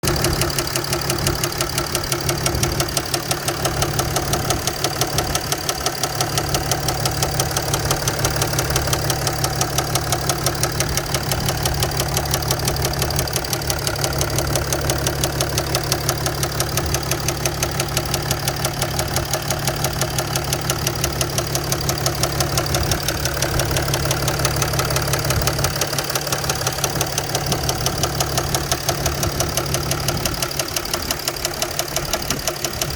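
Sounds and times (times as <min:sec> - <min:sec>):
diesel engine idling with knocking: 0:00.0 - 0:32.9.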